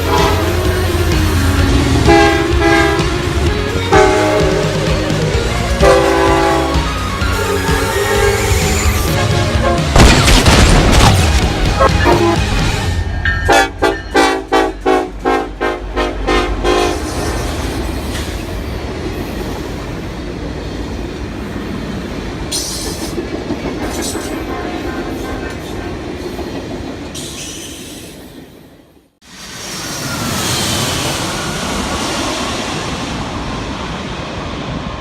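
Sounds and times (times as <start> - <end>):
short horn blasts: 0.0 - 0.7, 2.1 - 3.1, 3.9 - 4.6, 11.8 - 17.1.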